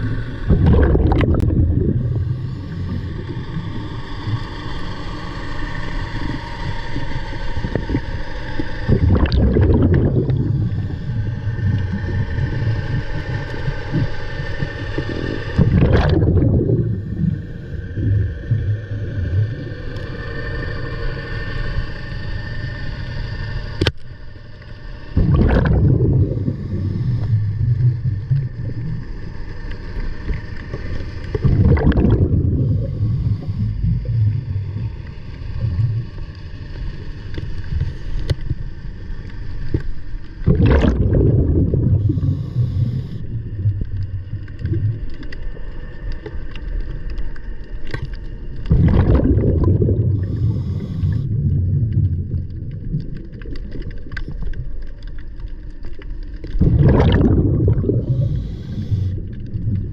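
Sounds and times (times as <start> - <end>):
surge of rushing water: 0.0 - 2.8, 14.7 - 17.3, 25.2 - 27.2, 30.2 - 33.4, 40.4 - 42.2, 47.9 - 50.7, 56.4 - 58.4
water sloshing against microphone: 0.0 - 4.6, 6.1 - 20.3, 23.8 - 59.9.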